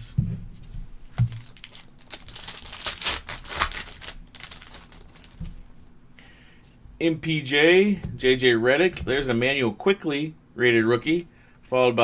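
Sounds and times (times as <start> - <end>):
foil wrapper crinkling: 1.2 - 5.5.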